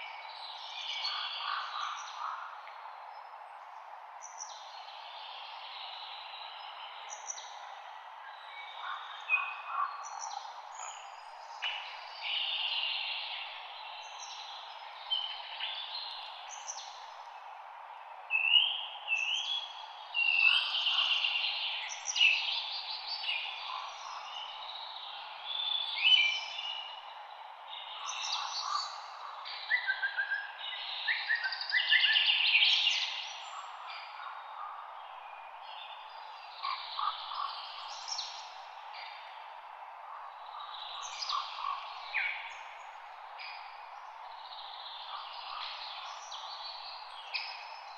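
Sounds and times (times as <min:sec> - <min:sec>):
light wind in leaves: 0:00.0 - 0:47.9
songbirds singing: 0:00.0 - 0:47.9.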